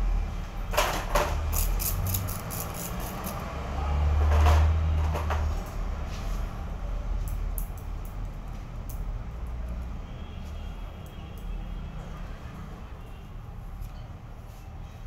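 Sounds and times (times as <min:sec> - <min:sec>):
scissors snipping hair: 0:01.5 - 0:03.4.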